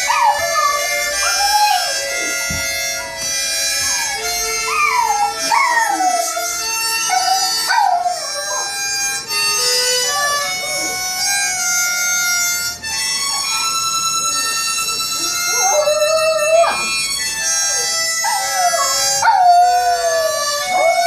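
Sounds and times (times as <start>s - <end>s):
small dog howling: 0.0s - 2.4s, 3.9s - 8.8s, 15.5s - 17.0s, 17.9s - 21.0s
harmonica chords: 0.0s - 21.0s.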